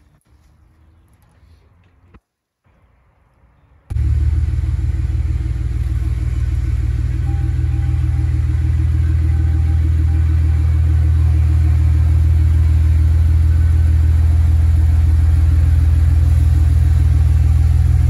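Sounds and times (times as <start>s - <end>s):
truck engine low rumble: 3.9s - 18.0s.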